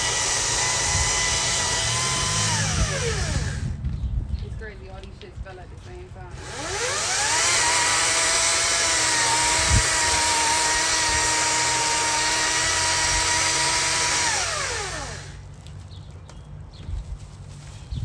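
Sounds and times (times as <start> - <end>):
chainsaw engine revving: 0.0 - 3.8, 6.4 - 15.4.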